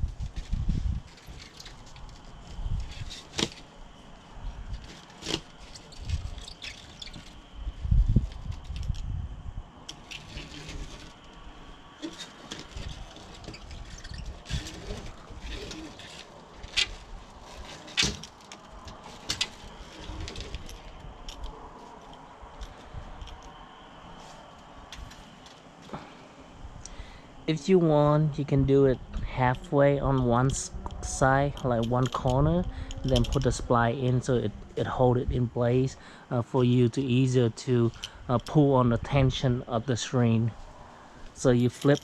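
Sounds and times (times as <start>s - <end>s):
faint rubbing and handling: 0.0s - 8.8s, 10.0s - 26.0s.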